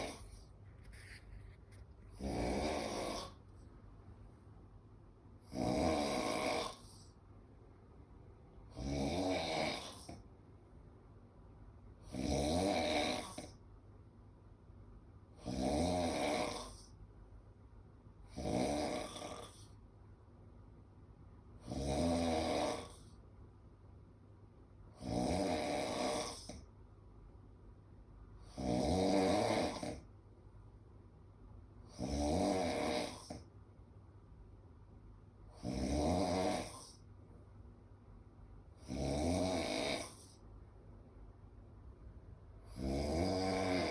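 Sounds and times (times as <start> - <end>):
man snoring: 0.0 - 0.4, 2.2 - 3.4, 5.5 - 7.1, 8.7 - 10.2, 12.0 - 13.6, 15.4 - 16.9, 18.3 - 19.8, 21.6 - 23.1, 25.0 - 26.6, 28.5 - 30.1, 31.9 - 33.4, 35.5 - 37.0, 38.8 - 40.4, 42.6 - 43.9
quiet breathing: 0.0 - 3.8, 6.5 - 7.4.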